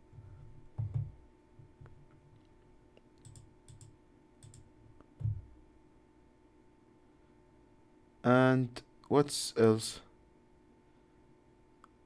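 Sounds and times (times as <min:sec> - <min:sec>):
faint steady hum: 0:00.0 - 0:12.0
computer mouse clicks: 0:03.2 - 0:05.3.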